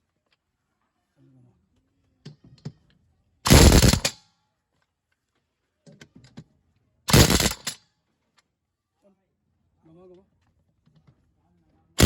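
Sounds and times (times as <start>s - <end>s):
impact wrench hammering: 3.5s - 4.1s, 7.1s - 7.8s.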